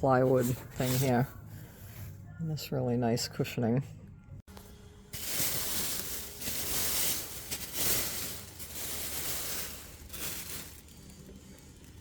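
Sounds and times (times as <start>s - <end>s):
packing cushioning rustling: 5.2s - 12.0s.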